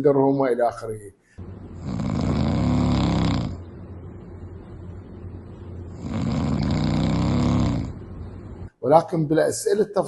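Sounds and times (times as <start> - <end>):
quiet breath: 1.2 - 1.6
man snoring: 1.8 - 3.6, 5.9 - 8.0.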